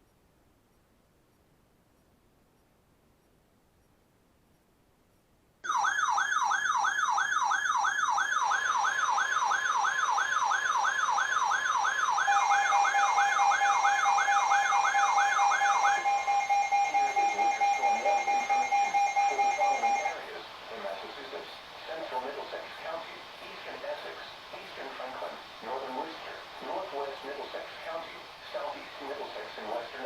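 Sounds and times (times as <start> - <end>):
warbling electronic alert tone: 12.0 - 20.2
steady alert tone: 12.2 - 20.2.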